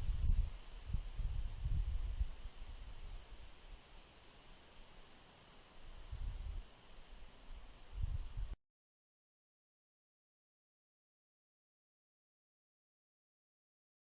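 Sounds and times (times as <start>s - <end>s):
crickets chirping: 0.4s - 8.4s.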